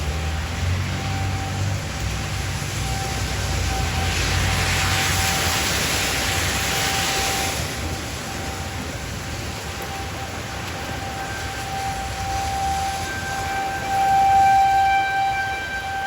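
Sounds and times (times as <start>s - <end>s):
faint warning siren steady tone: 0.0s - 16.0s.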